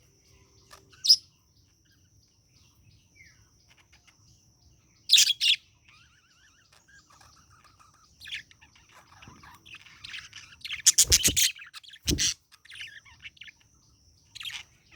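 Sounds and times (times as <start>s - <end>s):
budgerigar chattering: 10.7s - 12.4s.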